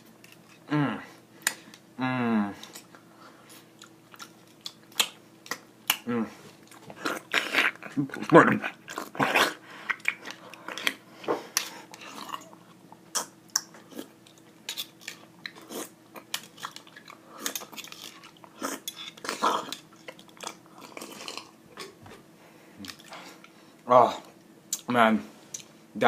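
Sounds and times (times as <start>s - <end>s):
close-up wet chewing: 2.6s - 6.0s, 6.6s - 22.0s, 22.8s - 23.6s.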